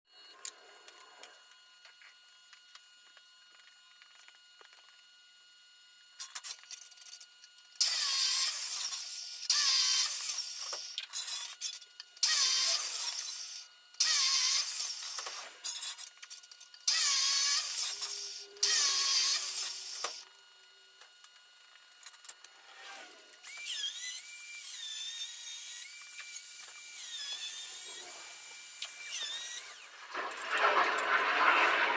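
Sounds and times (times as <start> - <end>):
handheld power tool running: 7.7 - 20.4, 21.3 - 31.9.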